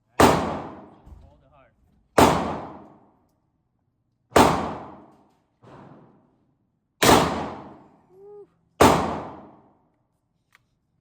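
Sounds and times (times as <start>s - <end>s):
echoing gunshots: 0.2s - 1.0s, 2.2s - 3.1s, 4.3s - 5.1s, 7.0s - 7.9s, 8.8s - 9.7s.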